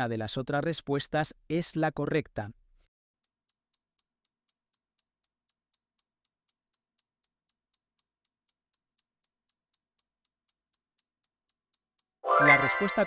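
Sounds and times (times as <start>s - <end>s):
faint clock-like ticking: 3.2s - 12.2s.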